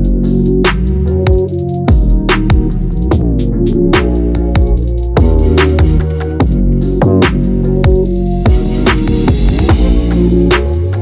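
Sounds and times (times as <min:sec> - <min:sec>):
electronic music with heavy beat: 0:00.0 - 0:11.0.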